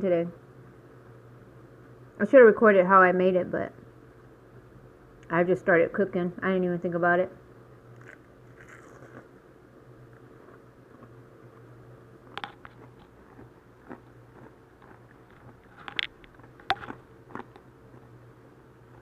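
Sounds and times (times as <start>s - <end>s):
steady low hum: 0.0s - 19.0s
chewing and biting: 8.0s - 9.3s, 10.1s - 11.2s, 12.2s - 18.2s.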